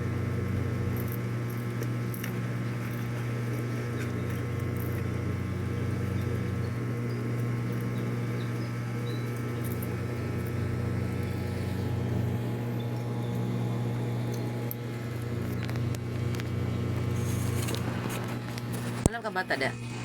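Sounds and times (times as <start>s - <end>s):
low mechanical hum: 0.0s - 20.0s.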